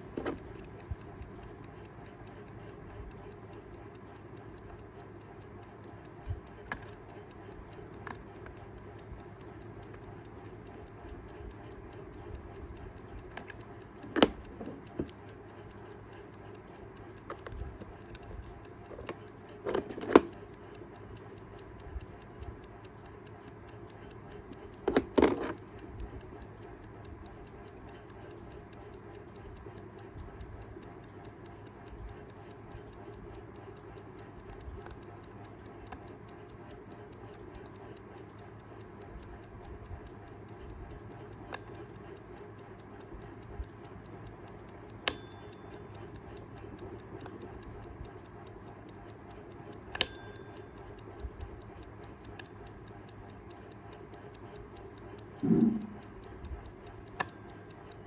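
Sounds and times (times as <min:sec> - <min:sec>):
alarm clock ticking: 0:00.0 - 0:58.0
sharp click: 0:43.3 - 0:58.0.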